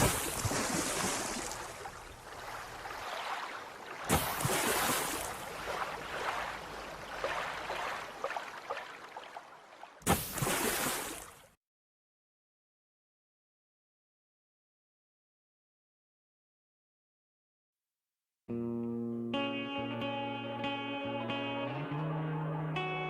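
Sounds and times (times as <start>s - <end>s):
water splashing and lapping: 0.0s - 11.6s.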